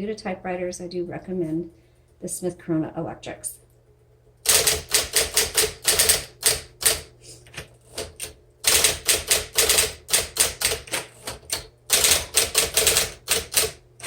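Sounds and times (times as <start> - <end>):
electric typewriter keystroke clacks: 4.4 - 14.0.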